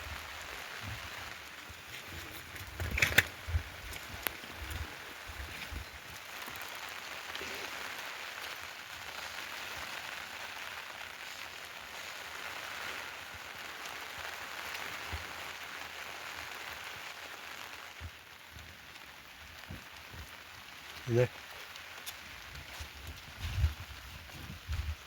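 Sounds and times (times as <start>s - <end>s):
steady rain falling: 0.0s - 25.0s.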